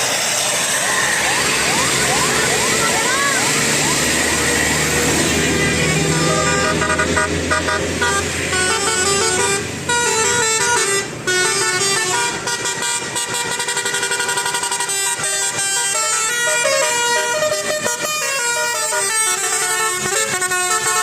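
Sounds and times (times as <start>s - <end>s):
bus engine hum: 0.0s - 21.0s
musical bus horn tune: 4.3s - 21.0s.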